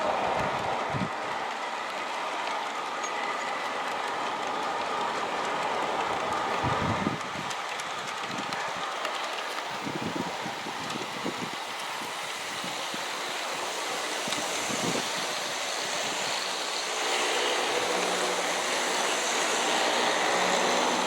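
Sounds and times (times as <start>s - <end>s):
clicking over rail joints: 0.0s - 15.2s
model train wheels rumbling on rail: 0.0s - 21.0s.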